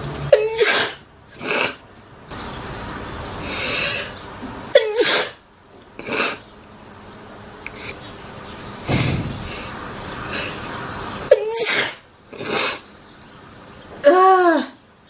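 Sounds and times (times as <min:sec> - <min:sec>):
woman sneezing: 0:00.3 - 0:01.8, 0:04.8 - 0:05.4, 0:11.3 - 0:12.8
breath: 0:03.4 - 0:04.1.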